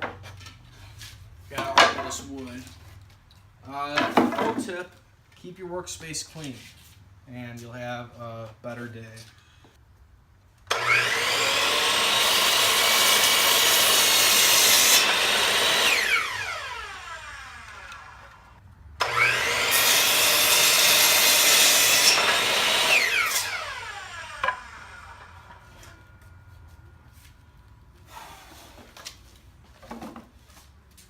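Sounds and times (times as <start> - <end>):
electric saw cutting wood: 10.7 - 26.4.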